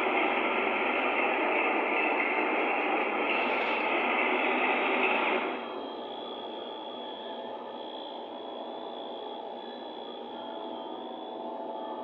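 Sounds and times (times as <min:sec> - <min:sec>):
air conditioner rushing noise: 0:00.0 - 0:05.6.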